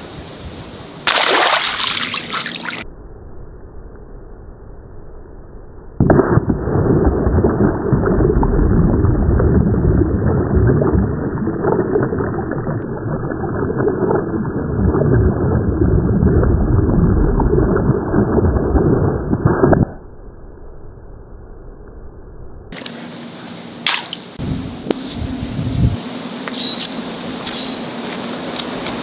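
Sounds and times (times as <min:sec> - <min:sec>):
water rushing and gurgling: 0:00.8 - 0:02.8, 0:22.8 - 0:24.4.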